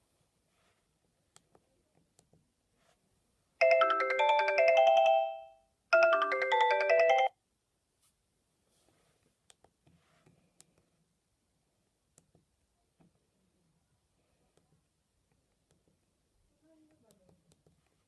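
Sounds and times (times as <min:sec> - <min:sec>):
phone ringtone chiming melody: 0:03.6 - 0:07.4.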